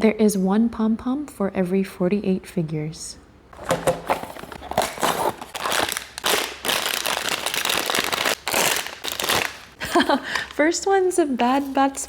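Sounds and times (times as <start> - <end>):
wrapper crinkling and crackling: 3.6 - 10.6, 11.4 - 12.0.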